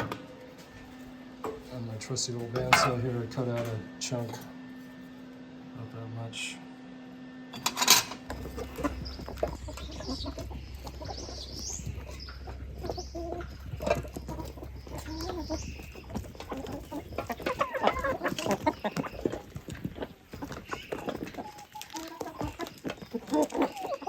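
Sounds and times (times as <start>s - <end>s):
steady low hum: 0.0s - 24.0s
chicken clucking: 2.5s - 3.5s, 8.3s - 24.0s.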